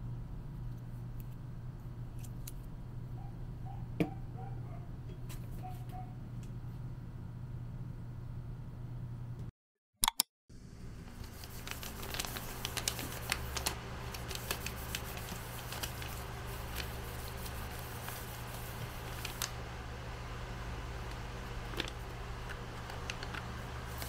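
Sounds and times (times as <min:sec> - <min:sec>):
steady low hum: 0:00.0 - 0:09.5, 0:10.5 - 0:24.0.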